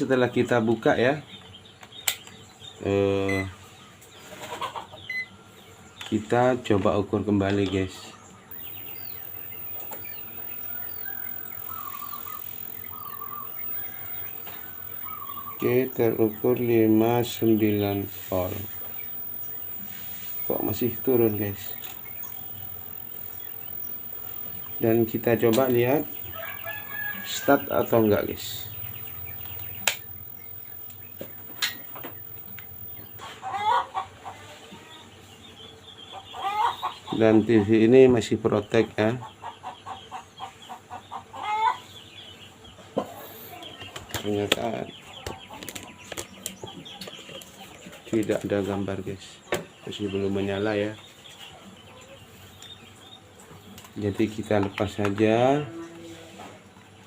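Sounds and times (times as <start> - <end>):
small birds chirping: 0.0 - 55.9
sharp clicks: 1.8 - 2.4, 8.5 - 33.2
chickens clucking: 3.3 - 5.3, 8.5 - 48.8
bird warbling: 8.5 - 33.9.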